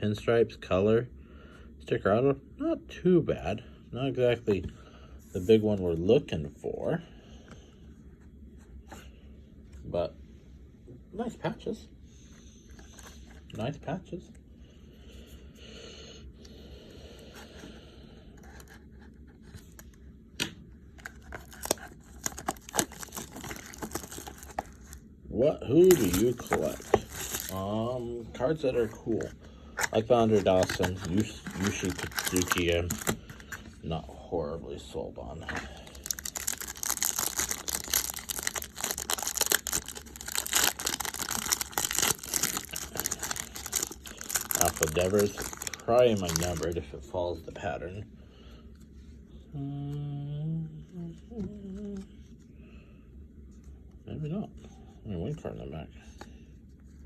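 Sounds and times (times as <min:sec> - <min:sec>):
wrapper tearing and crinkling: 0:21.0 - 0:25.0, 0:25.8 - 0:27.7, 0:29.8 - 0:33.4, 0:35.8 - 0:46.8.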